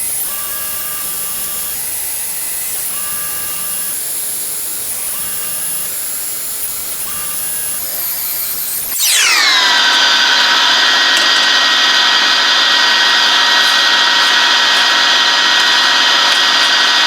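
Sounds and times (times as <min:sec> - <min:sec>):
faint high whines: 0:08.4 - 0:17.0.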